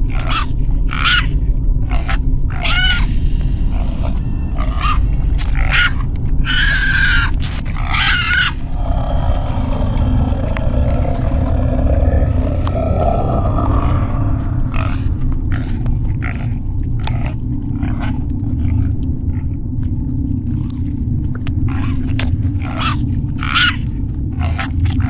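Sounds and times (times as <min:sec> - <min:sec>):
low rumble: 0:00.0 - 0:25.0
creature growling and snarling: 0:07.5 - 0:18.3.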